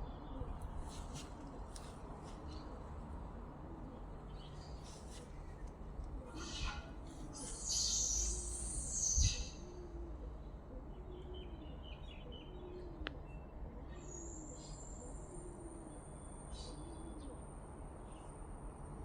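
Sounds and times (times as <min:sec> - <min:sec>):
small birds chirping: 0:07.4 - 0:09.6.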